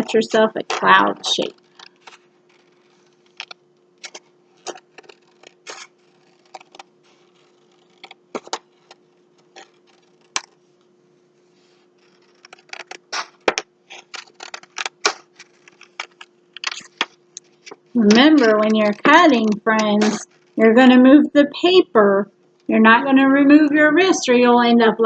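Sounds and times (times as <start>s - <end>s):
scissors snipping paper: 0.0s - 10.6s, 12.0s - 20.4s
faint steady hum: 0.0s - 25.0s.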